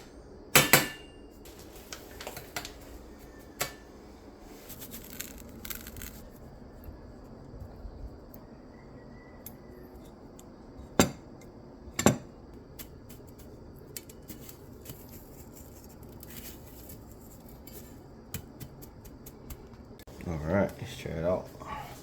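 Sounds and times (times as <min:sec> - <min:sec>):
utensils knocking against dishes: 0:00.6 - 0:01.2.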